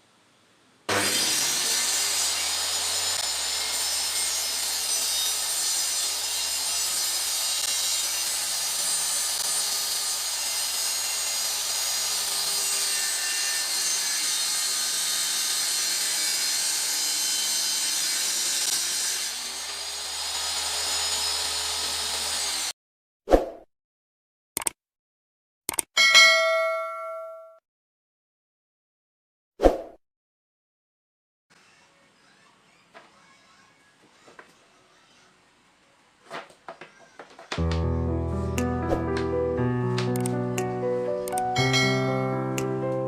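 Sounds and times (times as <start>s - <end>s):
table saw cutting wood: 0.9s - 22.8s, 37.0s - 43.0s.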